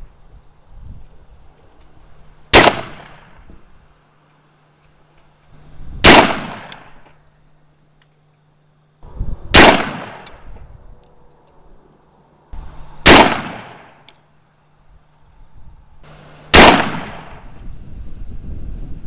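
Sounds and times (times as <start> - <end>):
rifle shots with metallic clang: 2.6 - 3.4, 6.0 - 7.2, 9.6 - 10.5, 12.7 - 14.1, 16.1 - 17.6.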